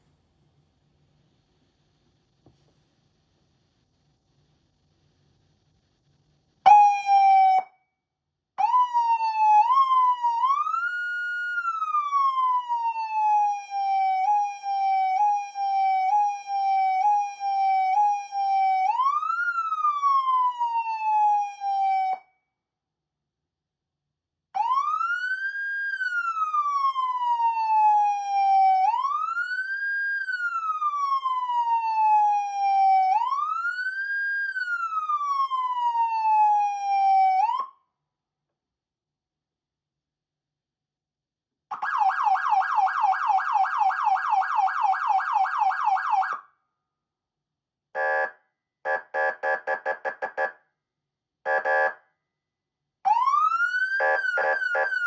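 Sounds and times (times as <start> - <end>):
electronic siren: 6.7 - 7.7, 8.6 - 22.2, 24.6 - 37.7, 41.7 - 46.4, 48.0 - 48.3, 48.9 - 50.5, 51.5 - 52.0, 53.1 - 55.0.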